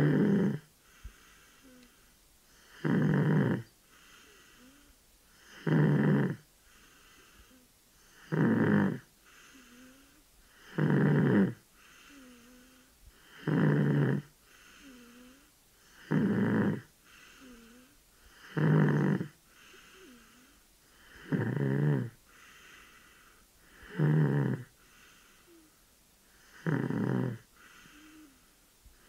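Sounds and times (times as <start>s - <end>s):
loud rasping snoring: 0.0s - 0.7s, 2.6s - 4.8s, 5.4s - 6.4s, 8.1s - 22.8s, 23.7s - 24.7s, 26.4s - 28.3s.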